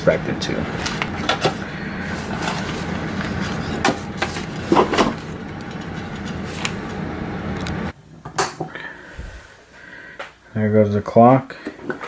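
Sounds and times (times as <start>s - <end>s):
steady low hum: 0.0s - 8.1s, 9.0s - 10.0s.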